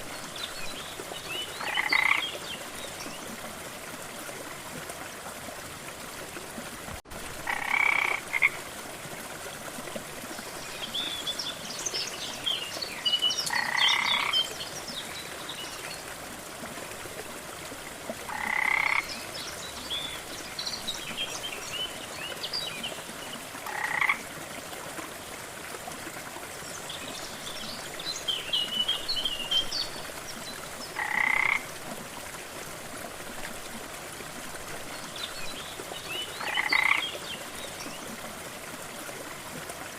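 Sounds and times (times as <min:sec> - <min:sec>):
frog croaking: 0:01.6 - 0:02.2, 0:07.4 - 0:08.6, 0:13.5 - 0:14.4, 0:18.3 - 0:19.1, 0:23.6 - 0:24.2, 0:31.0 - 0:31.6, 0:36.4 - 0:37.0.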